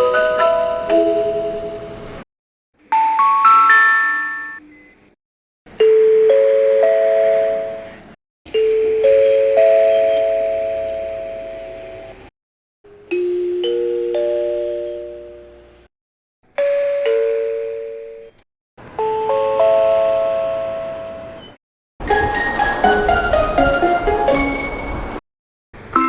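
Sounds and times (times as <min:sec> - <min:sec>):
bus chimes with rising bell notes: 0:00.0 - 0:02.2, 0:02.9 - 0:05.0, 0:05.8 - 0:08.0, 0:08.6 - 0:12.1, 0:12.9 - 0:15.9, 0:19.0 - 0:21.6, 0:22.3 - 0:25.2.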